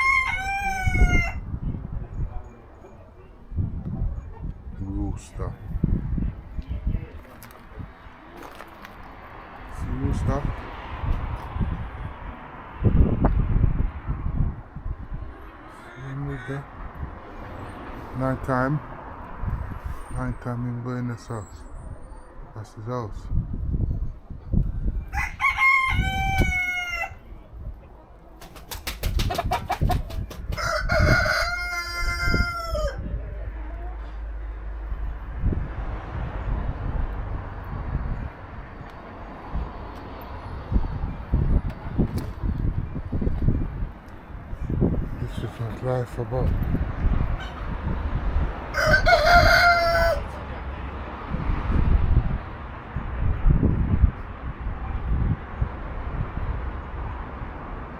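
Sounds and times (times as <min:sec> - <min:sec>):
rooster crowing: 0:00.0 - 0:01.5, 0:15.7 - 0:16.8, 0:25.0 - 0:27.3, 0:30.6 - 0:33.1, 0:48.7 - 0:50.4.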